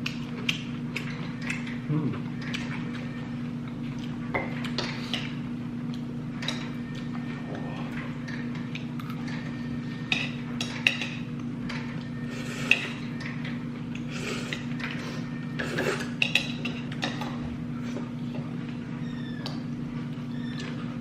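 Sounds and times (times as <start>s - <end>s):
chewing: 0.0s - 6.1s, 6.9s - 9.3s
steady low hum: 0.0s - 21.0s
utensils clinking on dishes: 10.0s - 11.9s, 15.6s - 17.4s.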